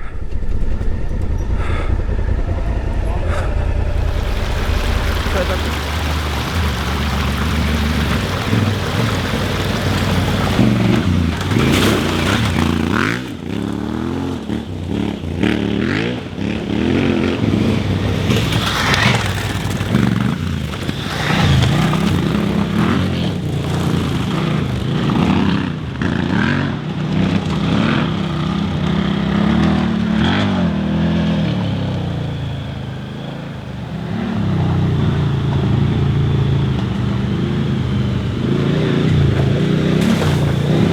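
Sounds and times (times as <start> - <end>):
motorcycle engine revving: 0.0 - 40.9
tyres scraping over rocks: 3.9 - 31.1, 37.3 - 40.9.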